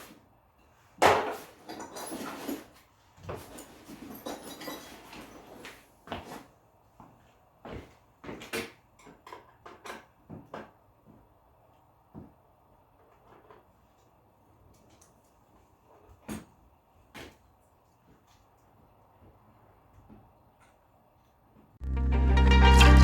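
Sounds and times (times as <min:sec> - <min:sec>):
handling rustling and scraping: 0:00.0 - 0:06.6.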